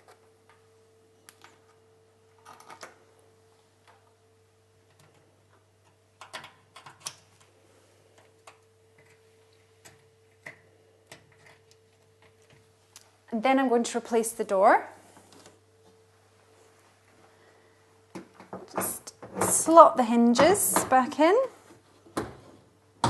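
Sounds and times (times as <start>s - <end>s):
faint steady hum: 0.0s - 23.0s.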